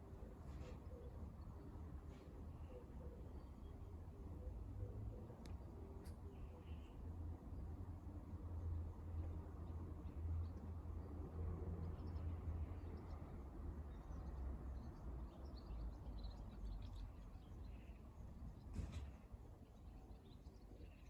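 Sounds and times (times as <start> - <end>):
click: 5.4 - 6.2.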